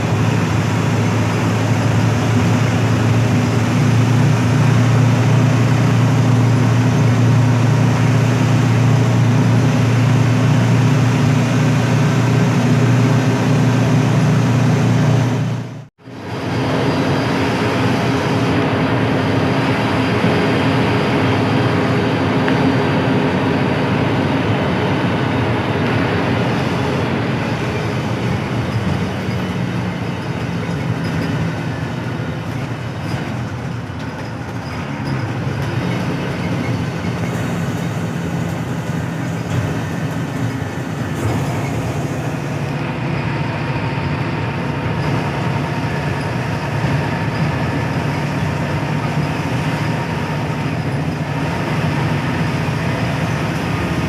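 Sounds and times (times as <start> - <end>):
bus diesel engine humming: 0.0 - 54.0
road noise: 0.0 - 54.0.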